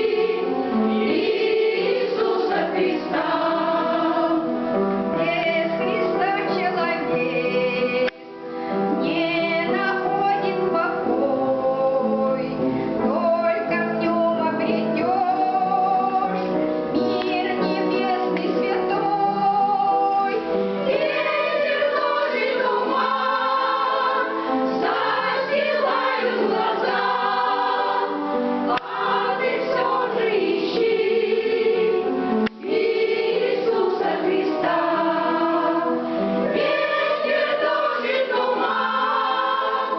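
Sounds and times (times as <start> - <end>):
choir singing: 0.0 - 8.1, 17.4 - 39.9
musical accompaniment: 0.0 - 39.9.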